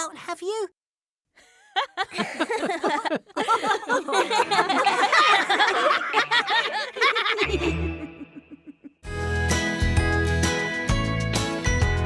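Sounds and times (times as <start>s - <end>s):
cartoon characters laughing: 1.8s - 9.1s.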